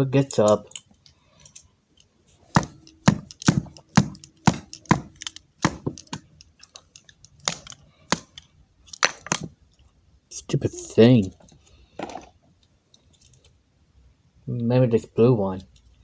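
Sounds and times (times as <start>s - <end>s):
pencil knocking on remote control: 2.5s - 6.3s.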